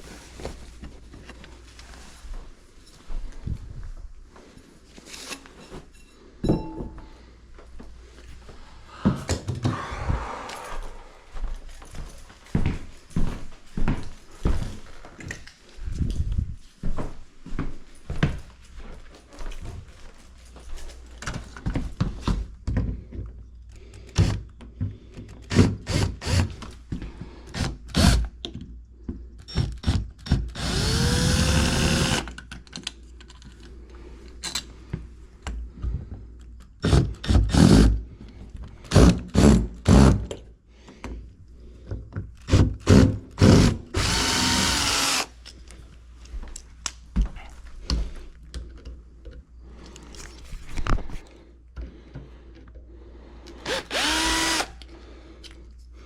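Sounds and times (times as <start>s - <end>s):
power drill whining: 25.4s - 26.5s, 27.5s - 28.3s, 29.5s - 32.3s, 36.8s - 37.9s, 42.8s - 45.3s, 53.6s - 54.9s.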